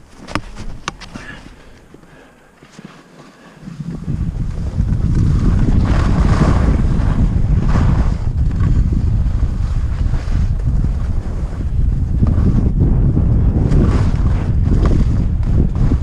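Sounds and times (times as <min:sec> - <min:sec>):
skis scraping on snow: 0:02.6 - 0:12.7, 0:13.4 - 0:16.0
wind buffeting microphone: 0:03.6 - 0:16.0.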